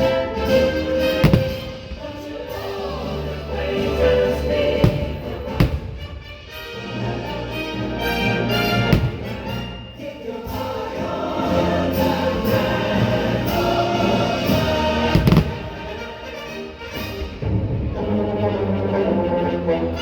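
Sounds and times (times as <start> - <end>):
choir singing with orchestra: 0.0 - 20.0
firework bangs: 0.5 - 2.6, 3.8 - 6.6, 8.6 - 9.8, 13.9 - 16.0.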